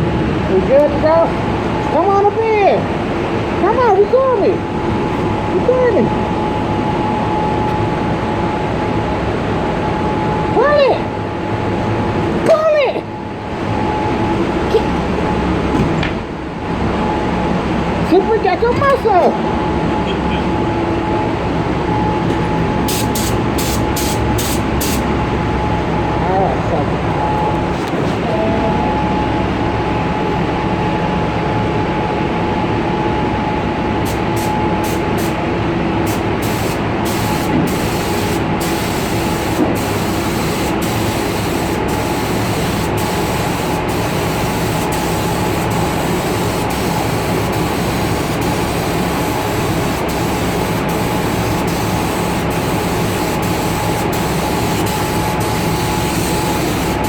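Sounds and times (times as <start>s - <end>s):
steady whine: 0.0s - 12.5s, 13.1s - 57.0s
paint spray gun hissing: 22.9s - 25.1s, 34.1s - 35.4s, 36.1s - 57.0s.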